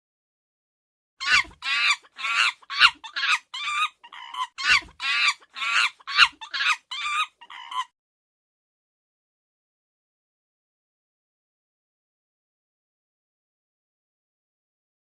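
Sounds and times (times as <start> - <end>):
chimpanzee shrieking calls: 1.2 - 8.0.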